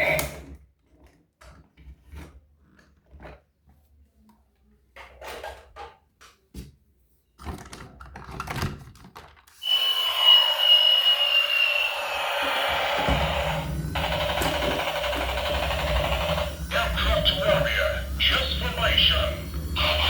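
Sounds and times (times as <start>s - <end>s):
loud music: 15.8s - 20.0s.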